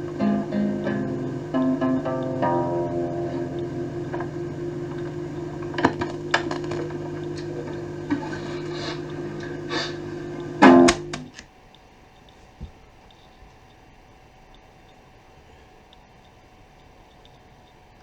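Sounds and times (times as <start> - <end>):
guitar music from cassette tape: 0.0 - 11.4
faint tape hiss: 0.0 - 18.0.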